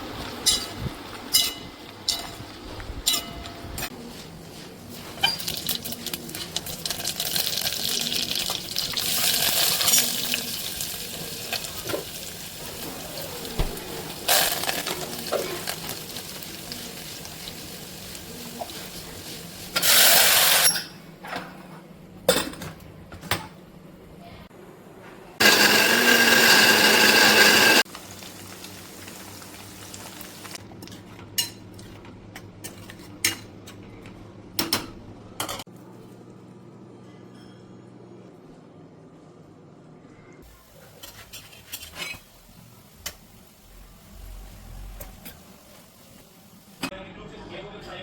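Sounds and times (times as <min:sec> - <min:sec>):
dishes and utensils clinking: 0:00.4 - 0:04.0, 0:05.1 - 0:06.6.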